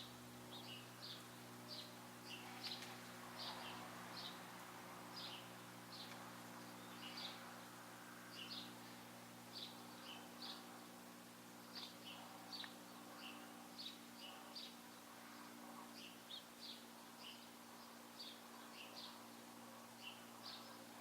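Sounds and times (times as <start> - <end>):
steady low hum: 0.0 - 21.0
faint bird chirps: 5.1 - 7.7, 11.7 - 21.0.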